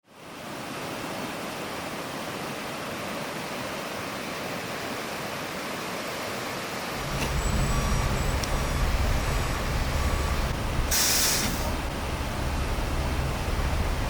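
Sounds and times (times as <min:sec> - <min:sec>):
steady rushing hiss: 0:07.0 - 0:11.9.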